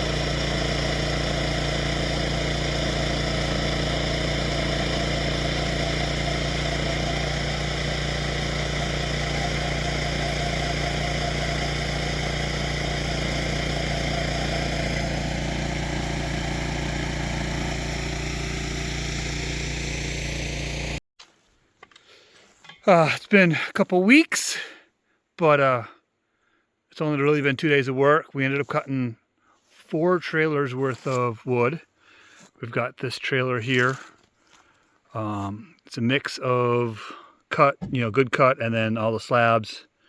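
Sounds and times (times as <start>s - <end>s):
sawmill gasoline engine running: 0.0s - 21.0s.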